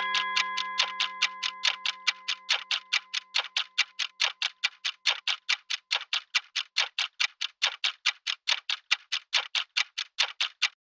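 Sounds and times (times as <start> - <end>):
ringing tone: 0.0 - 3.4
clock ticking fast: 0.0 - 10.9.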